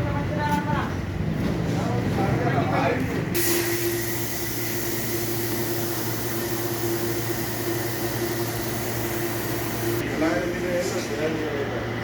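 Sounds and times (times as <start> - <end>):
electric fan humming: 3.4 - 12.0.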